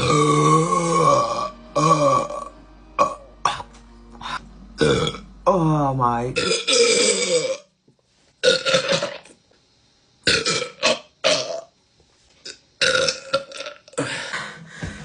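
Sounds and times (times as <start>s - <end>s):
woman belching: 0.0s - 5.2s, 6.4s - 7.7s, 8.4s - 9.3s, 10.3s - 11.7s, 12.8s - 14.1s.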